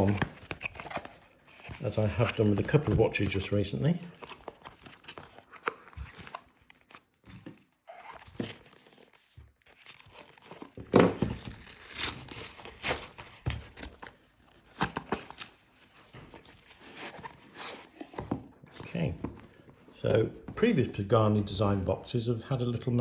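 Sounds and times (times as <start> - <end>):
wrapping crinkling and tearing: 0.0 - 18.1.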